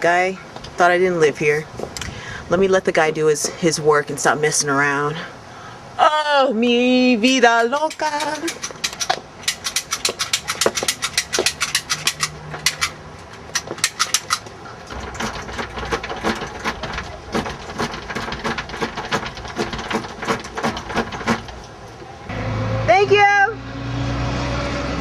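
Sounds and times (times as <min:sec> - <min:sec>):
lock tools clicking and rattling: 0:07.6 - 0:22.0.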